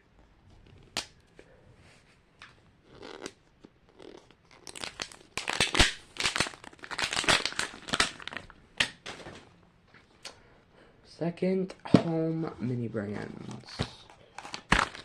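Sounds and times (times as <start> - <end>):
plastic packaging tearing and crinkling: 4.0 - 9.2, 14.3 - 15.0.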